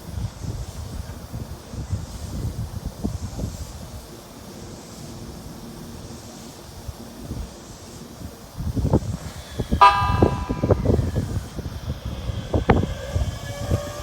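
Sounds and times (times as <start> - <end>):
electric train rumble: 3.9 - 14.0
wind buffeting microphone: 8.6 - 14.0.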